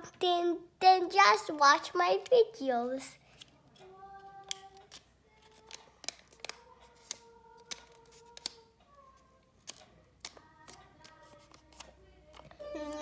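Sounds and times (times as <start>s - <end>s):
paper folding and creasing: 10.7s - 13.0s.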